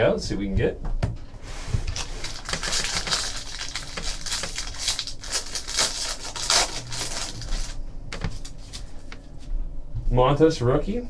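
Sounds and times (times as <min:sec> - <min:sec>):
foil wrapper tearing and crinkling: 0:01.8 - 0:08.9.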